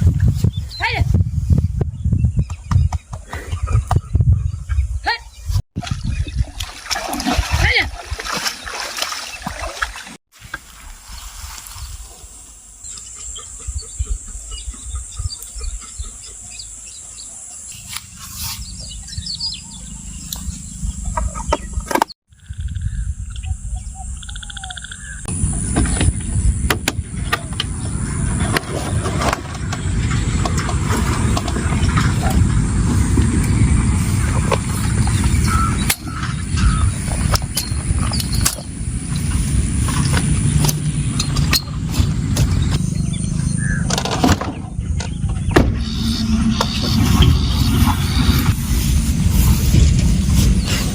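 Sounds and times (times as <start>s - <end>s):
birds chirping and calling: 0.0s - 10.1s, 12.7s - 50.9s
low rumbling noise: 25.0s - 50.9s.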